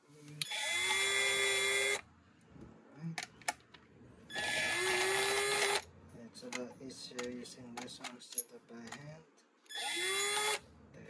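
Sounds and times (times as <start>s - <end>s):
power drill whining: 0.4s - 2.0s, 4.3s - 5.8s, 9.7s - 10.6s.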